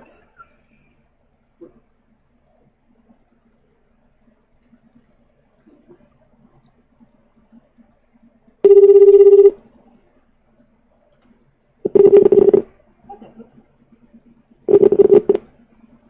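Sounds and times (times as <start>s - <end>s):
phone ringback tone: 8.6s - 9.6s, 11.9s - 12.7s, 14.7s - 15.4s.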